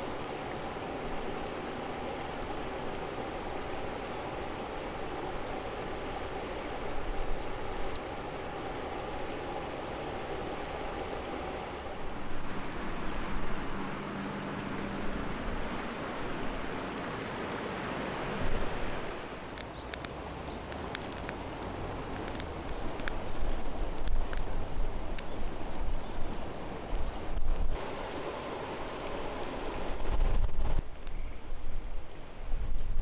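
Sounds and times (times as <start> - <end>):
campfire crackling and popping: 0.0 - 12.6, 18.4 - 29.1, 29.9 - 32.2
wind on microphone: 29.6 - 33.0.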